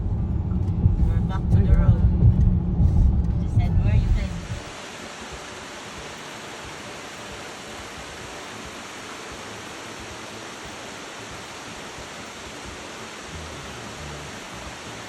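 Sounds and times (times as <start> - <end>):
low rumbling: 0.0 - 4.7
steady rushing noise: 0.0 - 15.0.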